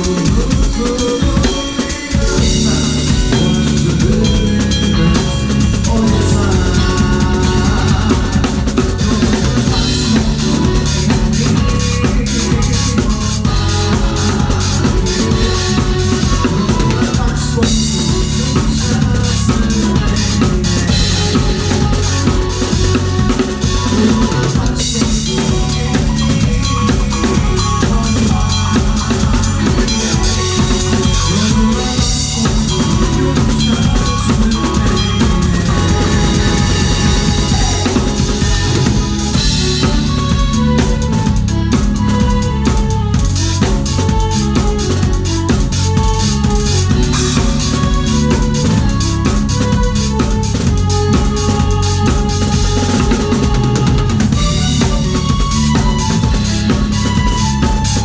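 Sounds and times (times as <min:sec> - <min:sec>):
drum kit playing: 0:00.0 - 0:58.0
keyboard held notes: 0:00.0 - 0:58.0
electric guitar held notes: 0:25.5 - 0:58.0.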